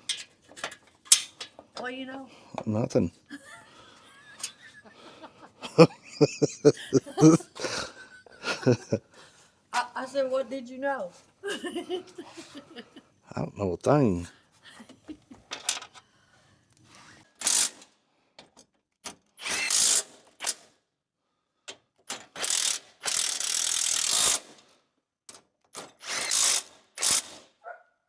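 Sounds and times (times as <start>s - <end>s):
ratchet wrench clicking: 17.4s - 17.8s, 19.4s - 20.6s, 22.2s - 24.5s, 26.0s - 27.4s.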